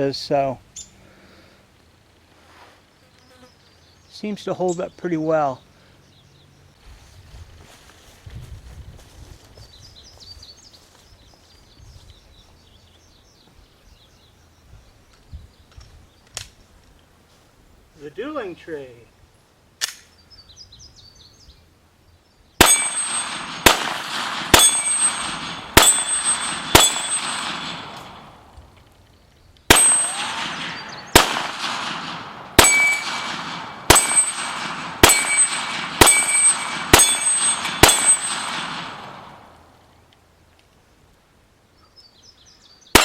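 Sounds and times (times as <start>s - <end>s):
gunshots: 22.6s - 28.5s, 29.7s - 39.6s
steel plates clanging: 32.6s - 38.7s.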